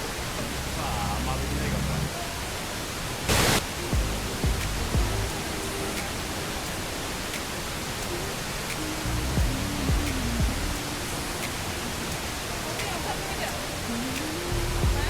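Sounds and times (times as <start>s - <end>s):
waterfall roaring: 0.0s - 15.0s
music with thumping beat: 3.9s - 5.3s, 9.4s - 10.8s.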